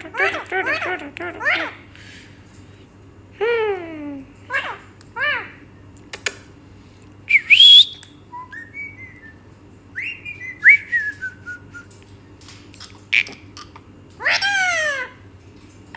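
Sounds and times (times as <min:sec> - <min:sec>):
parrot whistling and chirping: 0:07.3 - 0:09.4, 0:10.0 - 0:12.0.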